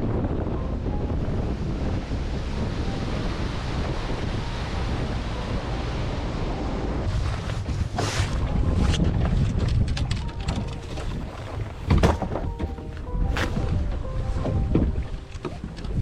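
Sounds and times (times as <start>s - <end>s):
water noise: 0.0s - 16.0s
wind rumbling on microphone: 0.0s - 16.0s.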